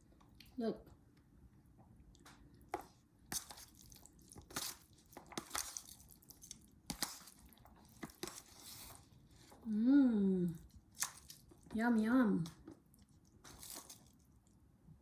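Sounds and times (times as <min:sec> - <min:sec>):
wet squishing and scraping of salad: 0:02.5 - 0:09.7, 0:10.6 - 0:11.9, 0:12.6 - 0:14.6.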